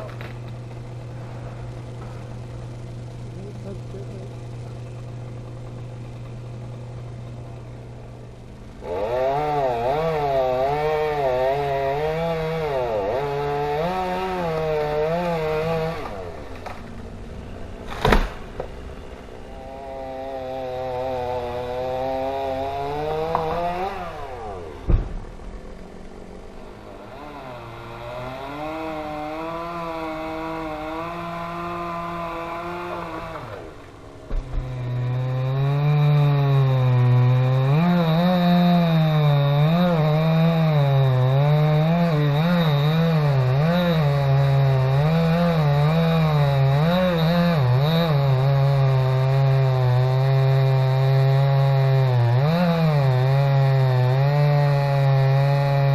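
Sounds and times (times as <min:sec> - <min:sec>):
chainsaw cutting wood: 0:00.0 - 0:55.9
sharp knock: 0:24.9 - 0:25.2.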